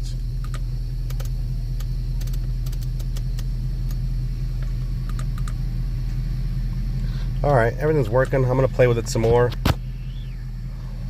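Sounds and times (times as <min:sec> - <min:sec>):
car engine idling: 0:00.0 - 0:11.0
dashboard control clicks: 0:00.4 - 0:04.0, 0:05.1 - 0:05.6.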